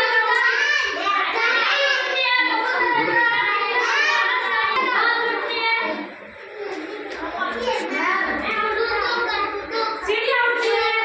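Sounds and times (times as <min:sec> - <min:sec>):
child singing a rhyme: 0:07.3 - 0:11.0.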